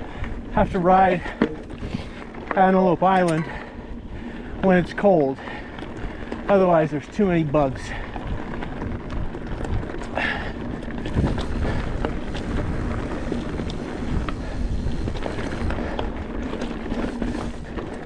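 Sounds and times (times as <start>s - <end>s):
wind noise on microphone: 0.0s - 2.5s, 3.4s - 18.0s
bike rattling and clicking: 0.0s - 18.0s
tyres rolling over rock: 4.6s - 18.0s.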